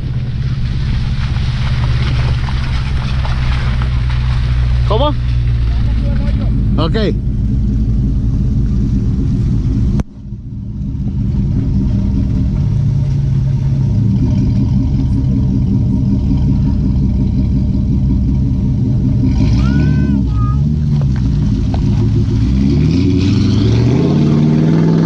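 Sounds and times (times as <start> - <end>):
vehicle engine and exhaust running: 0.0 - 25.0.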